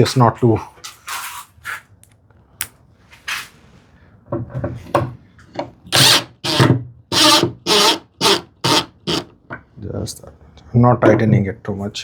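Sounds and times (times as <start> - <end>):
impact driver driving screw into wood: 5.9 - 9.3.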